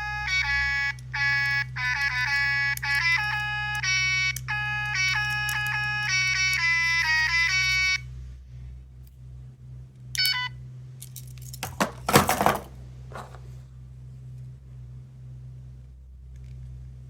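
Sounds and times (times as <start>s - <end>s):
buzzy beeping toy melody: 0.0s - 8.0s
clatter of clicks and rattles: 11.0s - 13.5s.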